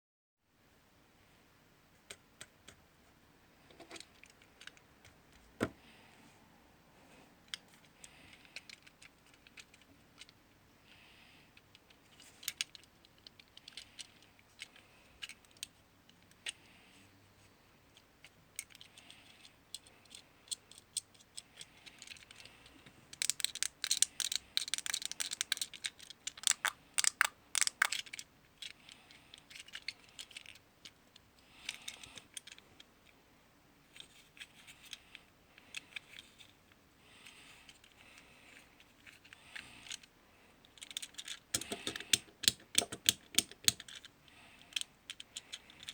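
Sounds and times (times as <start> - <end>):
plastic fidget cube clicking: 8.3 - 10.4, 23.1 - 31.0, 38.6 - 45.9.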